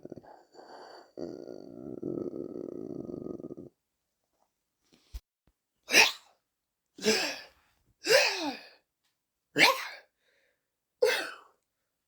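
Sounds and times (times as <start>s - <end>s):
person making zombie snarls: 0.0s - 3.7s, 7.0s - 7.5s.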